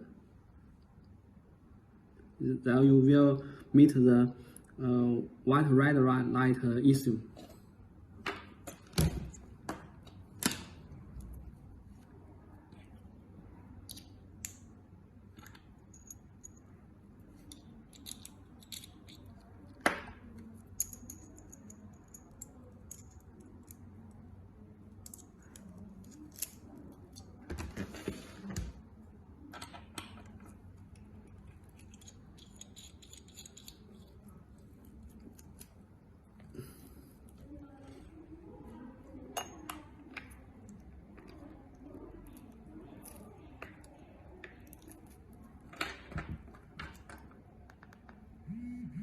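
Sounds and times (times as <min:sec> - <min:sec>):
metal parts clicking and tapping: 0:15.4 - 0:16.6, 0:17.4 - 0:19.4, 0:20.7 - 0:23.8, 0:25.0 - 0:26.6, 0:31.6 - 0:33.9.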